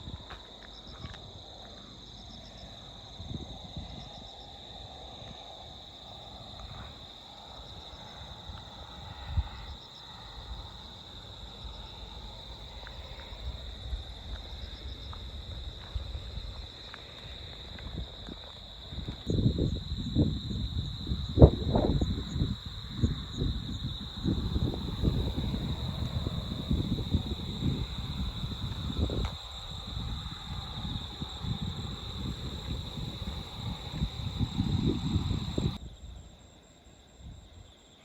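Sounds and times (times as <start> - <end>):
insects singing: 5.4 - 35.8.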